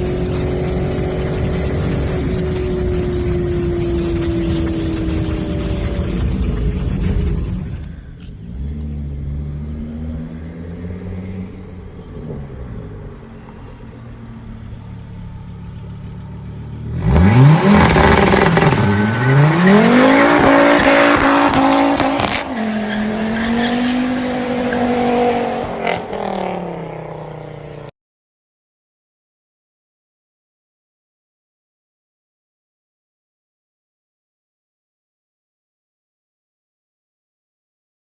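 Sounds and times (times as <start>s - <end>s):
car engine accelerating: 0.0s - 27.9s.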